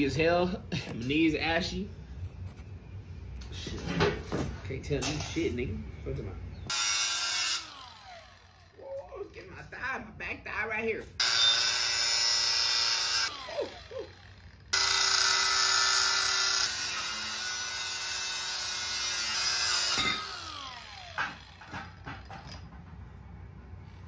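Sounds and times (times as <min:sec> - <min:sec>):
electric power tool whining: 0:06.7 - 0:09.5, 0:11.2 - 0:22.7.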